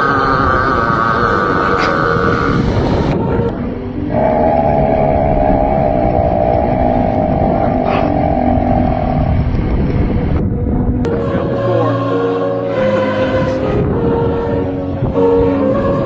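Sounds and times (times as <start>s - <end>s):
long wavering burp: 0.0s - 3.2s, 4.1s - 9.6s
noisy background: 0.0s - 16.0s.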